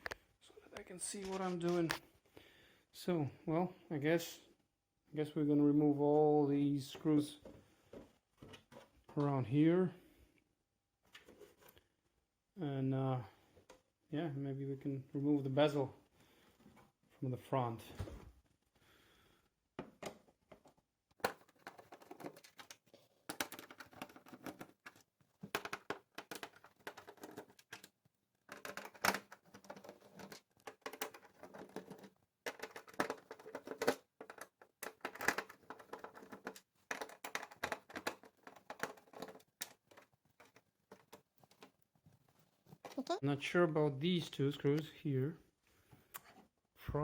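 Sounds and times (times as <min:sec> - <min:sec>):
screwdriver clicking and scraping: 0:21.2 - 0:27.9.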